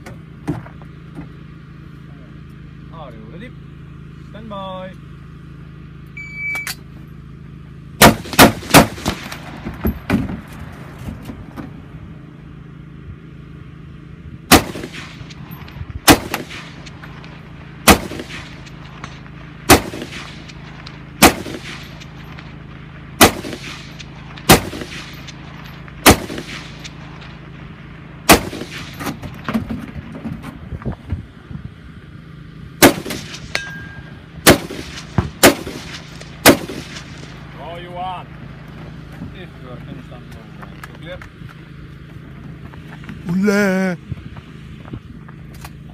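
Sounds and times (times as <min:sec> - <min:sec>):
shot timer beep: 0:06.2 - 0:06.8
rifle shots: 0:08.0 - 0:09.8, 0:14.5 - 0:22.6, 0:23.2 - 0:27.6, 0:28.2 - 0:29.2, 0:32.8 - 0:33.6, 0:34.4 - 0:37.5.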